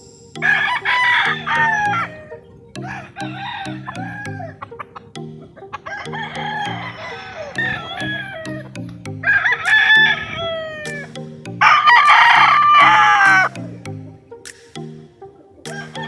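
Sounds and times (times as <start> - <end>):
music with low beat: 0.0 - 16.0
roosters crowing: 0.4 - 5.0, 5.7 - 13.6, 15.7 - 16.0.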